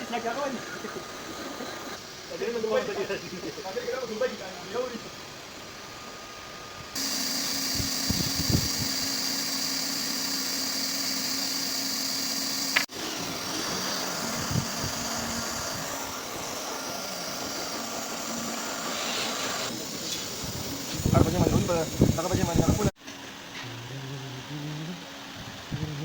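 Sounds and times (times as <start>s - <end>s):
machine hum with high whine: 0.0s - 26.0s.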